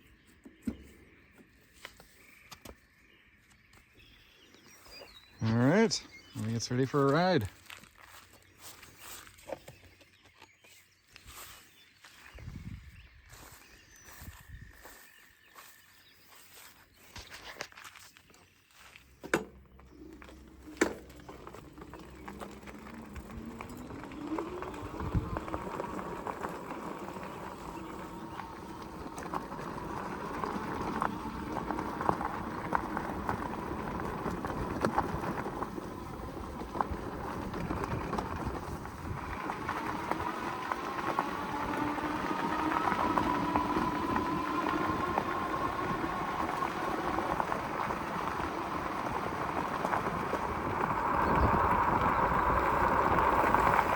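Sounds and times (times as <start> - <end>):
tyres and wind noise: 5.3 - 9.9, 12.2 - 15.0, 19.0 - 53.9
electric bike motor whine: 19.3 - 53.9.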